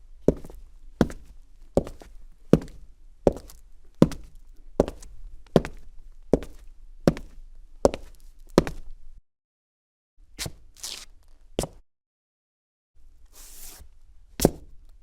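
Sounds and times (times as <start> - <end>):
boots walking on cement: 0.3 - 8.9.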